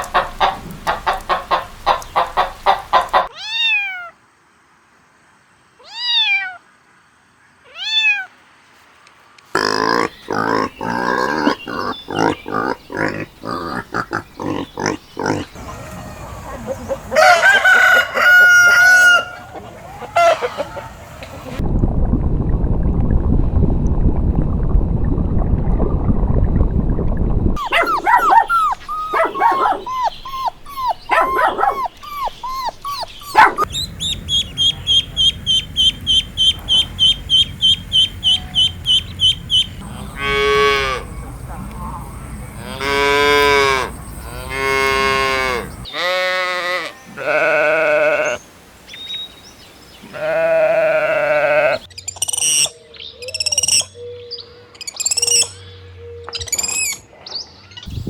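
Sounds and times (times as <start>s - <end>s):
clucking calls: 0.0s - 3.3s, 9.6s - 21.6s, 27.6s - 46.0s
drawn-out pitched animal calls: 9.6s - 20.8s, 27.6s - 48.4s, 50.0s - 51.9s
rooster crowing: 15.6s - 21.0s, 38.3s - 41.4s
long low rumbling noise: 21.1s - 27.6s, 33.0s - 45.9s
fast high chirps: 27.6s - 40.1s.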